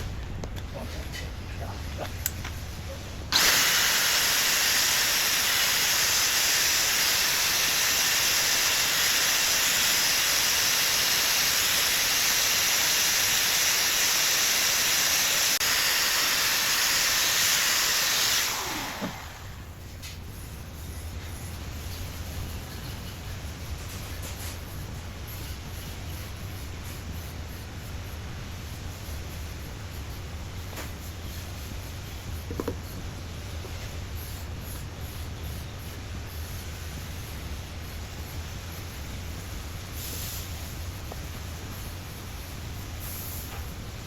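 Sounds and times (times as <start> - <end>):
welding arc hissing: 3.3 - 19.9.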